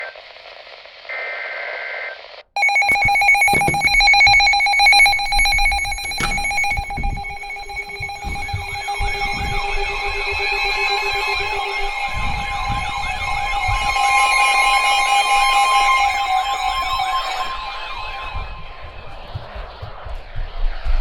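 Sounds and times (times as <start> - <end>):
radio hiss: 0.0 - 2.5
alert tones: 2.6 - 18.4
pulsing electronic alarm tones: 2.6 - 19.8
siren wailing: 2.6 - 20.1.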